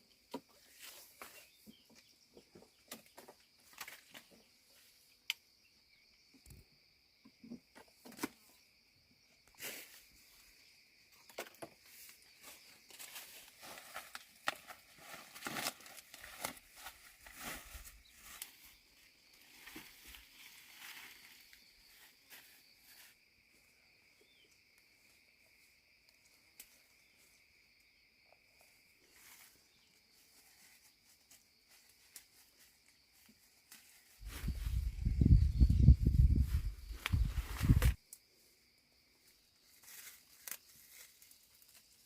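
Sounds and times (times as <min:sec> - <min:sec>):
faint rustling and crackling: 0:11.3 - 0:23.2, 0:39.6 - 0:42.0.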